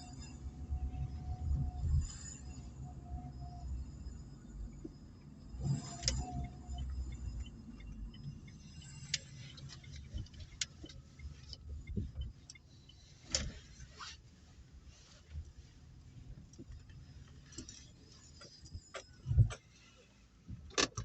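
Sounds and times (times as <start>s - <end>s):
car running rumble from inside: 0.0s - 21.0s
sharp clicks and knocks: 20.6s - 21.0s.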